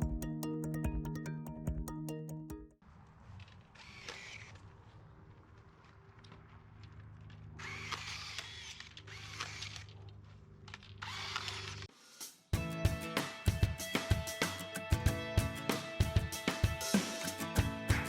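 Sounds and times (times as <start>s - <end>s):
power drill running: 3.8s - 4.6s, 7.6s - 10.0s, 11.0s - 11.9s.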